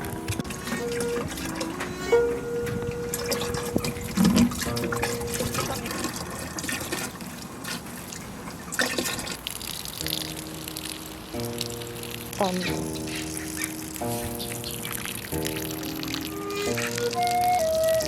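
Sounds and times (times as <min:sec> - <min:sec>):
long held melodic notes: 0:00.0 - 0:06.5, 0:10.1 - 0:18.0
water splashing onto plants: 0:03.0 - 0:18.0.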